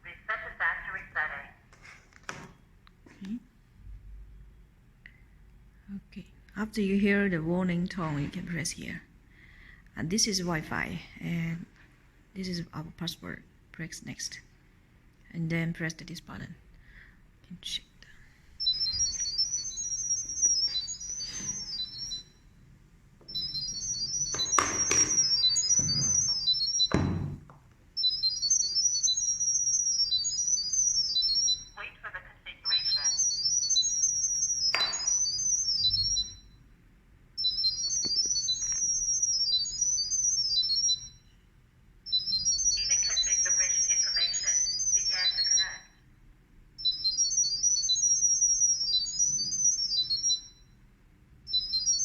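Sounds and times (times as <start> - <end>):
high-pitched electronic beeps: 18.6 - 22.4, 23.3 - 27.2, 28.0 - 31.8, 32.7 - 36.6, 37.4 - 41.3, 42.1 - 46.0, 46.8 - 50.7, 51.5 - 52.0.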